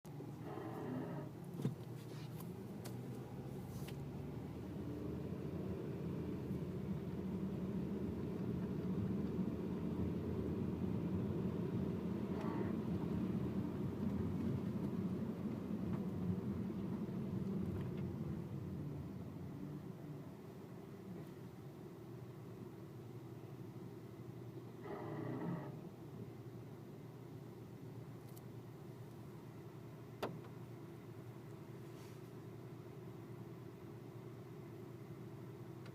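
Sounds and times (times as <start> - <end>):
car engine running: 0.1 - 26.0.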